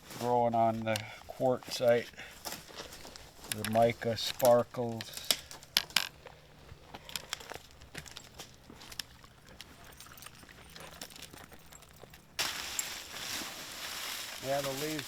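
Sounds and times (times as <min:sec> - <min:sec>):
footsteps crunching through dry leaves: 0:00.0 - 0:15.0
steady hiss: 0:12.4 - 0:15.0.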